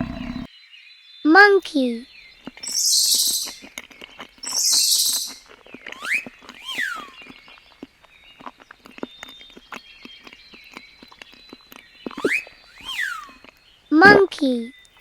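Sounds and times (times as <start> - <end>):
monkey whooping calls: 0.0 - 0.5, 2.6 - 3.6, 4.4 - 5.4, 6.0 - 7.2, 12.2 - 13.4
monkey hissing screech: 2.6 - 3.6, 4.5 - 5.4.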